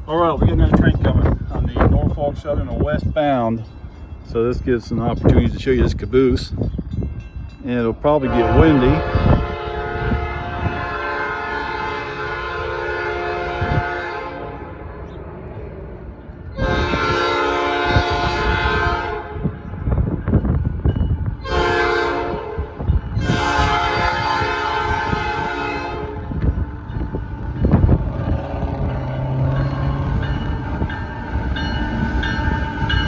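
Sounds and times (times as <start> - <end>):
locomotive air horn blasts: 8.2 - 14.9, 16.6 - 19.6, 21.4 - 26.4, 31.9 - 33.0.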